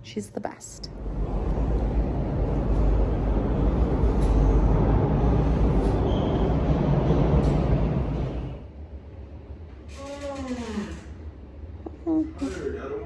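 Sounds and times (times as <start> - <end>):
moving vehicle rumble: 0.8 - 8.6.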